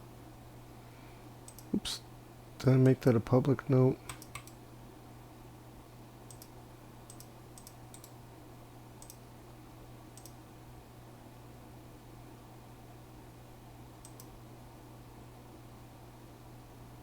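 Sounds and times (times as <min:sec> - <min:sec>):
steady low hum: 0:00.0 - 0:17.0
computer clicks: 0:01.5 - 0:01.8, 0:04.0 - 0:04.6, 0:06.3 - 0:08.2, 0:09.0 - 0:09.2, 0:10.2 - 0:10.4, 0:14.0 - 0:14.4.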